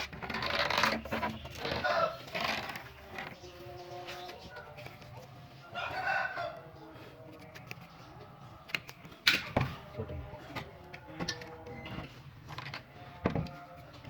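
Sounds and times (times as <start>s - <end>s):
workshop knocks and clicks: 8.7s - 13.6s.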